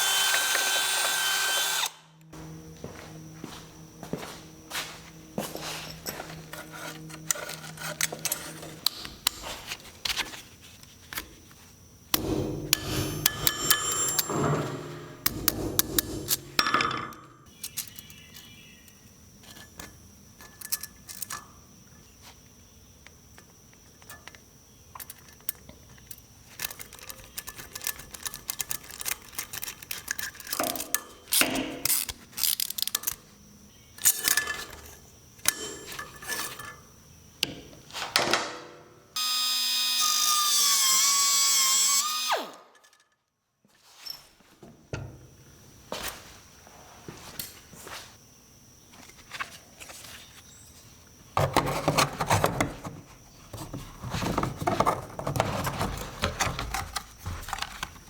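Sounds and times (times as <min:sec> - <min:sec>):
metal tools clinking and knocking: 0:12.7 - 0:18.0, 0:34.0 - 0:36.9.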